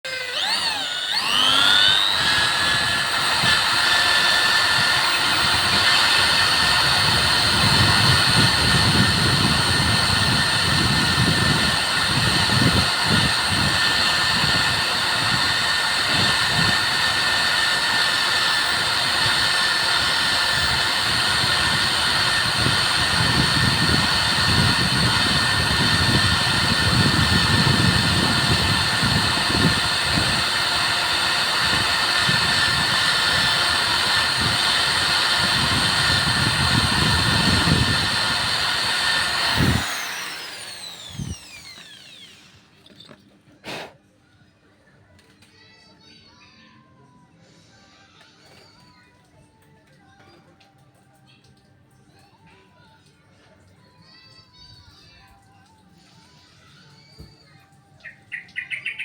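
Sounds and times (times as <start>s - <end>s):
power tool grinding: 0.0s - 43.9s.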